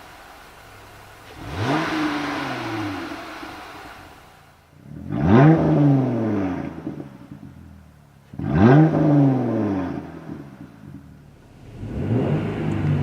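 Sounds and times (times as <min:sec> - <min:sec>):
engine revving: 0:00.0 - 0:13.0.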